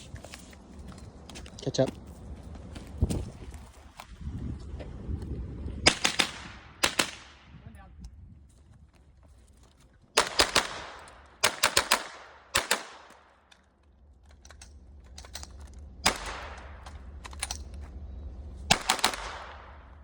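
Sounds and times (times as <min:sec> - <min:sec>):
echoing gunshots: 0:05.8 - 0:07.5, 0:10.2 - 0:13.5, 0:16.0 - 0:17.2, 0:18.7 - 0:20.0.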